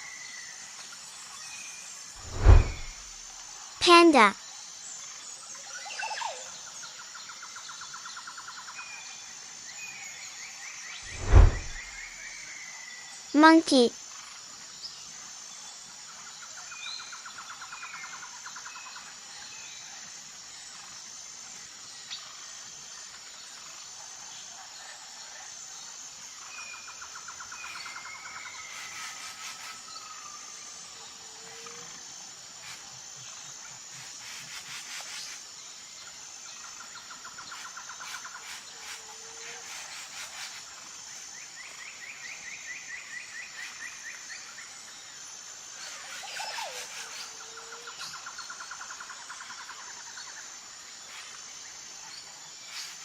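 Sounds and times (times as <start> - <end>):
pulsing insect drone: 25.4 - 53.0.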